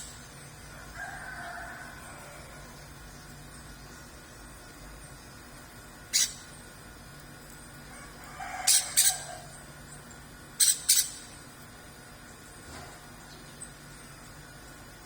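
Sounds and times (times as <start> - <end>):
songbird high-pitched calls: 6.1 - 6.6, 8.6 - 11.4.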